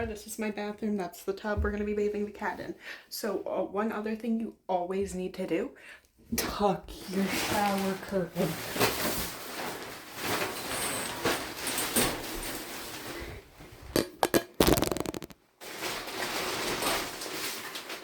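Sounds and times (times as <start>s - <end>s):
shower curtain rustling: 8.6s - 13.2s.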